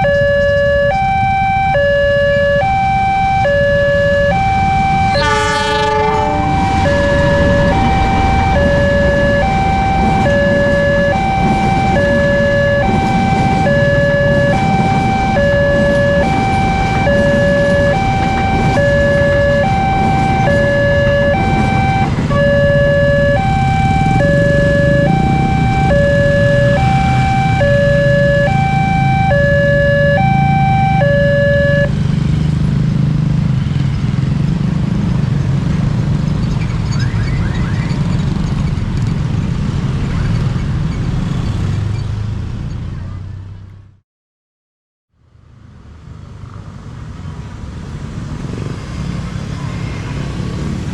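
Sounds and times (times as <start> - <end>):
level crossing alarm two alternating tones: 0.0 - 32.0
train rumbling over crossing: 0.0 - 43.3, 47.6 - 50.9.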